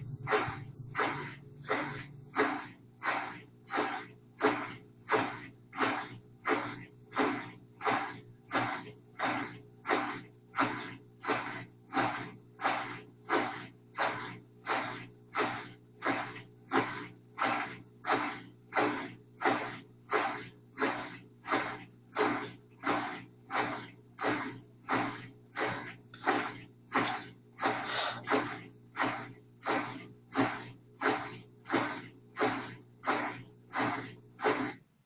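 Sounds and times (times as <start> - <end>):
low hum: 0.0 - 2.4
machine swishing: 0.0 - 9.4, 25.6 - 34.8.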